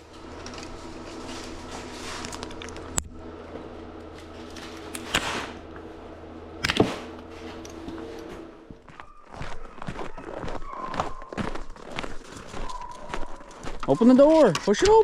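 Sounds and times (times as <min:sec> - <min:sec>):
steady low hum: 0:00.0 - 0:13.9.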